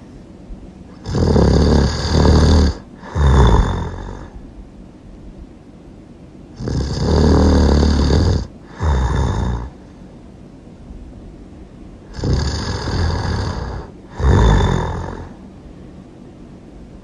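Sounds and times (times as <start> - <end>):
loud snoring: 0.9 - 4.4, 6.6 - 9.8, 12.1 - 15.4.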